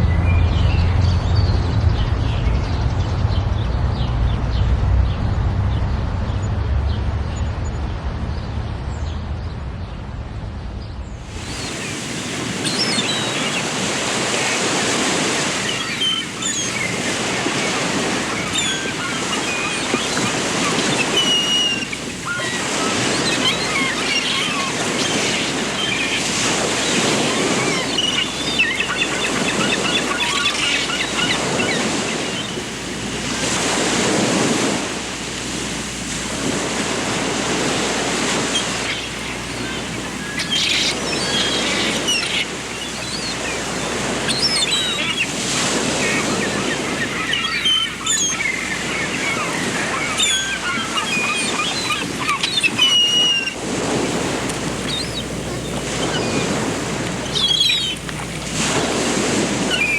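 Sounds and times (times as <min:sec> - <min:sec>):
rushing water: 0:11.2 - 0:59.9
small birds chirping: 0:11.3 - 0:32.7, 0:38.4 - 0:58.2.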